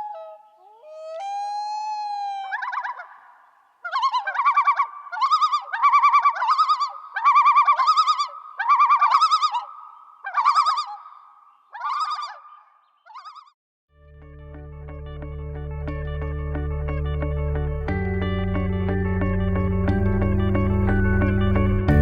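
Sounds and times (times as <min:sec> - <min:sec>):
loon calling: 0:00.0 - 0:13.6.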